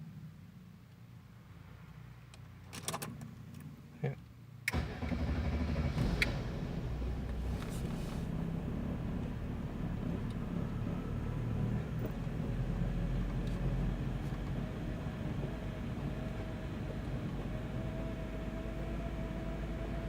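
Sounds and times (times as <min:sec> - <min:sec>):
engine rough idle: 0:04.7 - 0:20.0.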